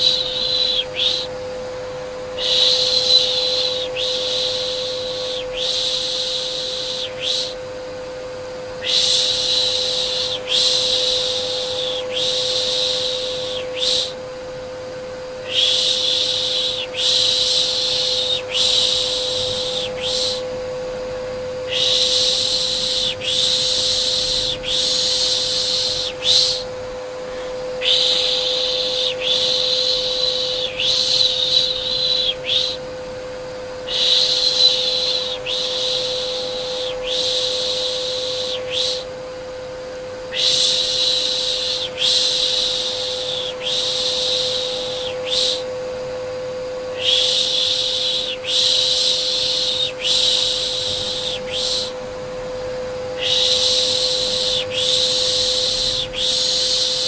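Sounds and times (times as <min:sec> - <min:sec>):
steady hum: 0:00.0 - 0:57.0
person shushing: 0:15.4 - 0:20.5, 0:21.7 - 0:32.8, 0:33.8 - 0:39.1, 0:47.0 - 0:52.0.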